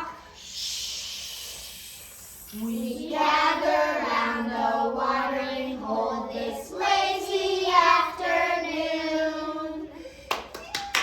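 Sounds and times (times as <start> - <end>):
children singing together: 2.4 - 10.0.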